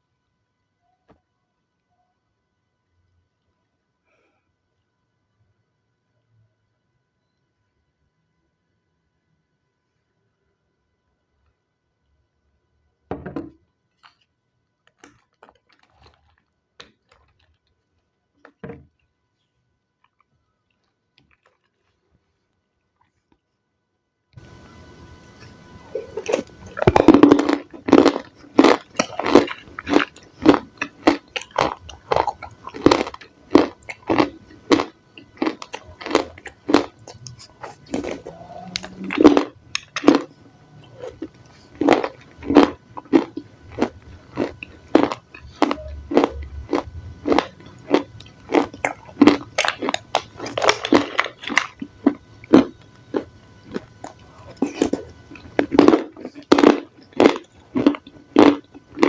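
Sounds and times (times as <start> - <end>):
crunchy chewing of raw vegetables: 13.9 - 23.5, 24.4 - 59.0.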